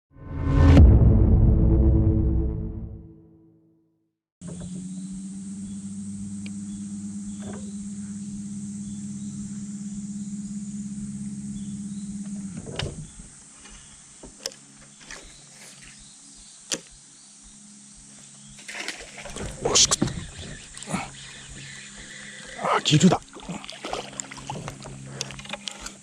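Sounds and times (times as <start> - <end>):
small electric motor humming: 4.4 - 18.6.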